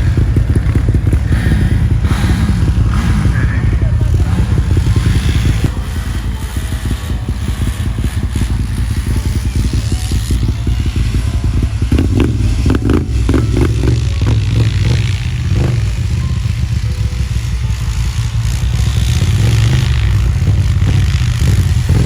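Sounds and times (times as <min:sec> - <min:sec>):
small vehicle engine running: 0:00.0 - 0:22.0.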